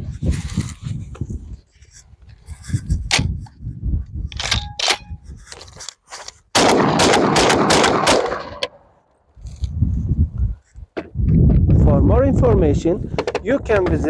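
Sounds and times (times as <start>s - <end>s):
shotgun shots with echo: 6.6s - 8.8s.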